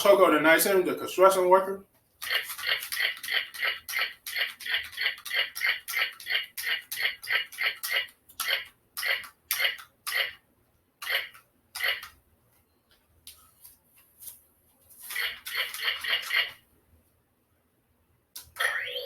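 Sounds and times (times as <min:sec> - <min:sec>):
toy blaster electronic shots: 0:02.2 - 0:10.4, 0:11.0 - 0:12.2, 0:15.1 - 0:16.6.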